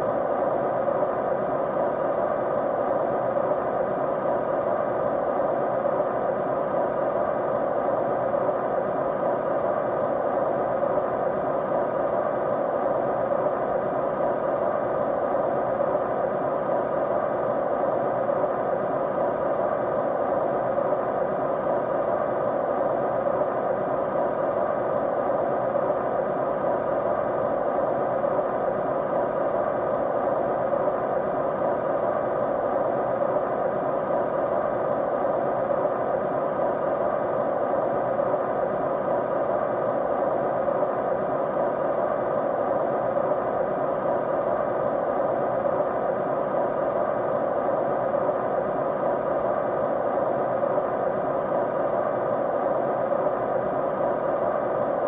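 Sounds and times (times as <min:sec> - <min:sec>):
faint steady tones: 0:00.0 - 0:55.0
white noise hiss: 0:00.0 - 0:55.0.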